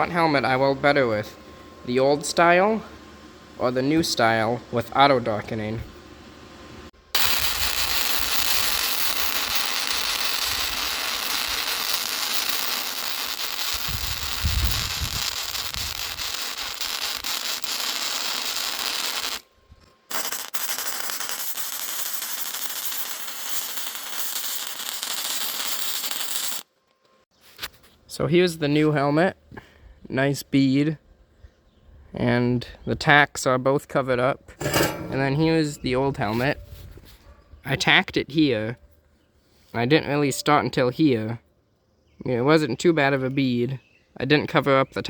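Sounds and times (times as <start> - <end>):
welding arc crackling: 7.1 - 26.7.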